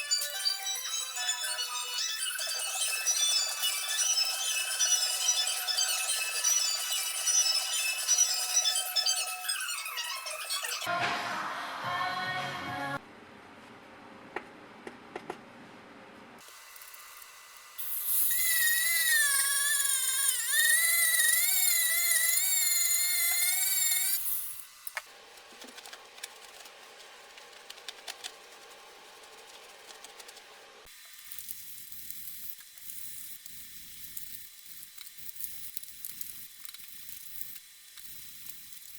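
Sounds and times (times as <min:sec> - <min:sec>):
high-speed power tool whining: 0:01.1 - 0:10.7, 0:17.8 - 0:25.0.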